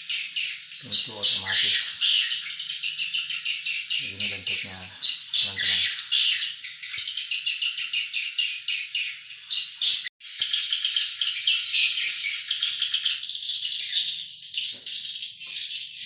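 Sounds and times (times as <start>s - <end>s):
swiftlets twittering: 0.0s - 7.8s.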